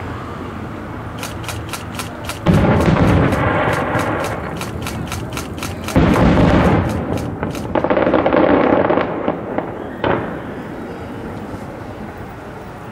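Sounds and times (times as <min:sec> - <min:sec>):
fireworks crackling: 0:01.2 - 0:10.9
fireworks boom with rumble: 0:02.4 - 0:04.2, 0:06.0 - 0:10.6.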